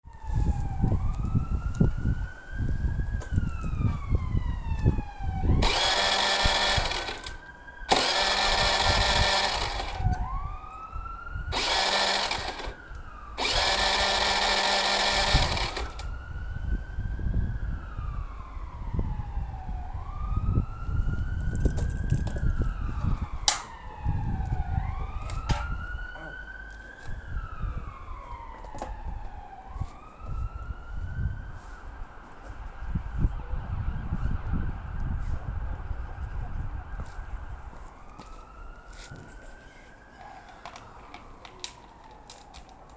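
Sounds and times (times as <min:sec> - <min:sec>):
siren wailing: 0:00.0 - 0:42.9
scooter electric starter cranking: 0:05.6 - 0:10.1, 0:11.5 - 0:12.8, 0:13.4 - 0:16.1.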